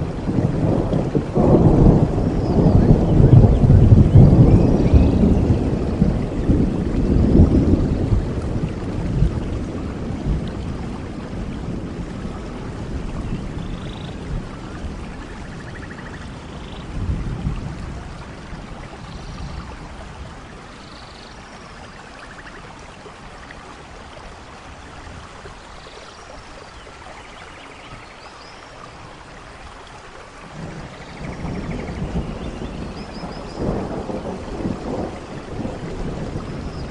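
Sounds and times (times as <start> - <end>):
rolling thunder: 0.0 - 20.7, 30.4 - 36.9
steady rain: 0.0 - 36.9.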